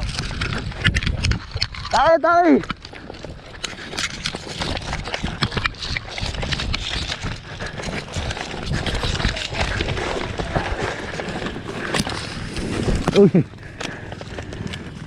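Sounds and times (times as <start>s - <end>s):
carried gear rustling and knocking: 0.0s - 15.0s
running footsteps: 0.0s - 15.0s.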